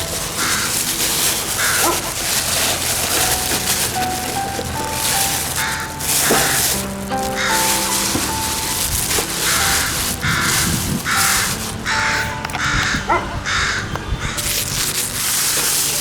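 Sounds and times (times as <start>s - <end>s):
background music: 0.0s - 16.0s
crow cawing: 0.4s - 0.9s, 1.6s - 2.0s, 5.6s - 7.7s, 9.4s - 14.4s.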